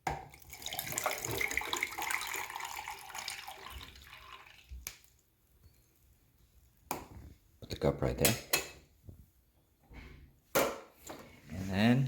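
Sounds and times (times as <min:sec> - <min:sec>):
water pouring into reservoir: 0:00.3 - 0:05.2.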